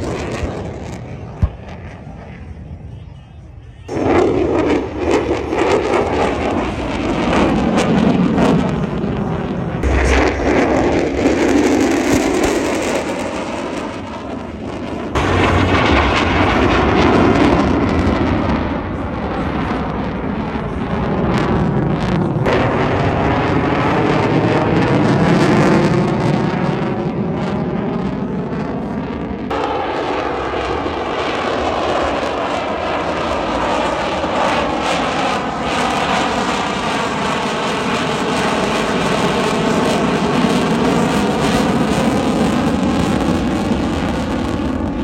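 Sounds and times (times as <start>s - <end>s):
airplane flying past: 4.0s - 25.0s.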